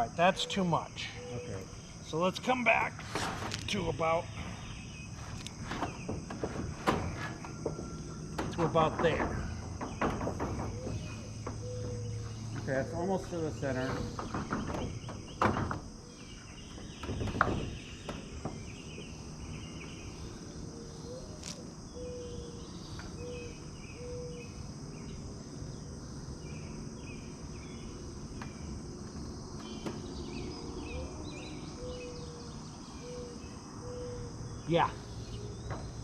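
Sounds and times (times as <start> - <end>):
crickets and insects chirping: 0.0 - 36.0
knocks: 5.6 - 15.9, 16.8 - 18.7.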